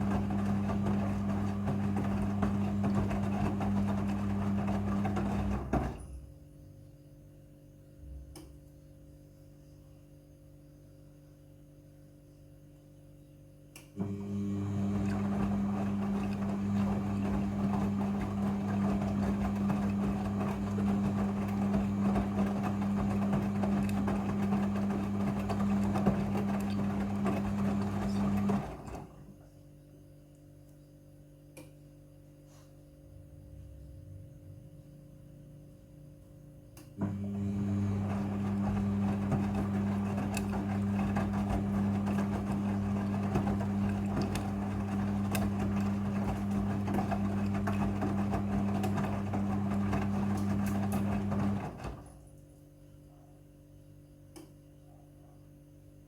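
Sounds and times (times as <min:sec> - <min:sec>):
wet laundry tumbling: 0:00.0 - 0:06.2, 0:14.0 - 0:29.4, 0:37.0 - 0:52.2
washing machine motor drone: 0:00.0 - 0:06.5, 0:14.0 - 0:29.4, 0:33.0 - 0:52.4
faint hum: 0:25.4 - 0:47.4.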